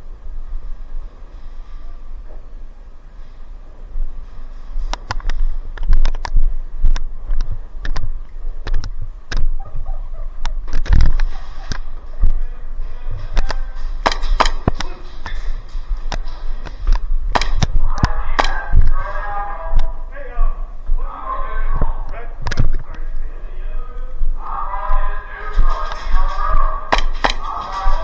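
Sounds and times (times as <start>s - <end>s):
airsoft gun pops: 13.4s - 15.4s, 16.9s - 19.0s, 26.9s - 27.9s.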